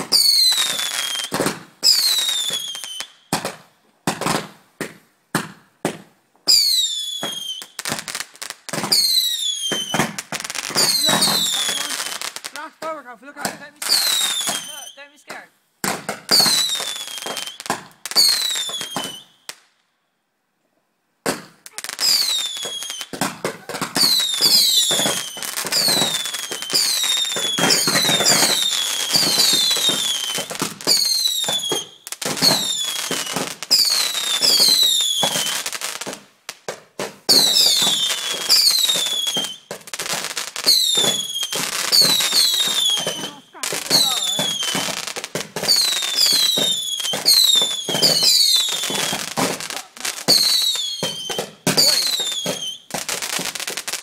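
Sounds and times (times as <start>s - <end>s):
falling firework whistles: 0.0s - 3.5s, 6.5s - 8.1s, 8.8s - 12.3s, 16.3s - 19.7s, 21.4s - 36.2s, 37.3s - 53.5s
firework barrage bangs: 9.7s - 14.8s, 21.2s - 53.7s.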